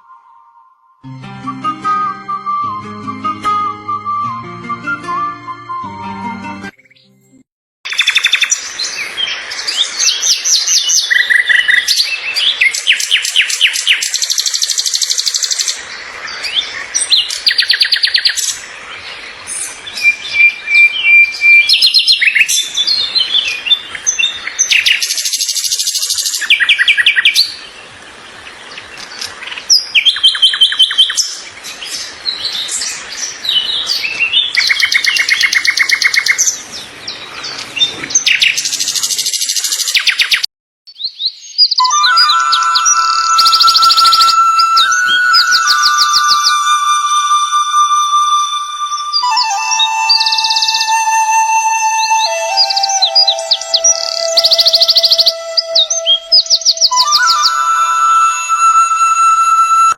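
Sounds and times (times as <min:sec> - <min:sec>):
birds chirping and trilling: 0:07.9 - 0:59.9.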